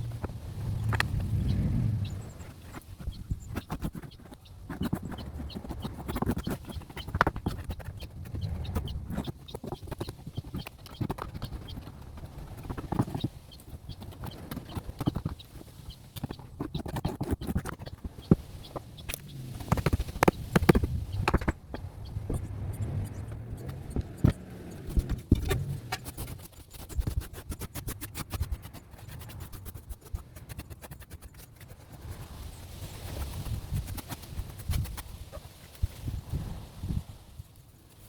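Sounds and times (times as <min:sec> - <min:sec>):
wooden boards knocked and scraped: 0:16.2 - 0:22.6, 0:23.3 - 0:27.6.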